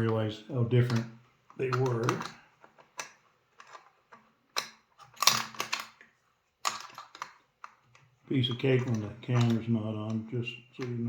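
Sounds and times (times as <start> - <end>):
small metal parts clicking: 4.5 - 6.0, 6.6 - 8.0.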